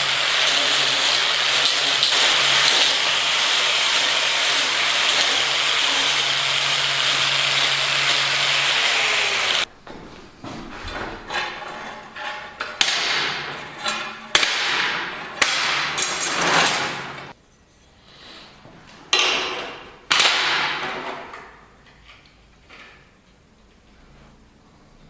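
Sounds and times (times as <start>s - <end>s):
metal clanks ringing: 10.7s - 17.8s.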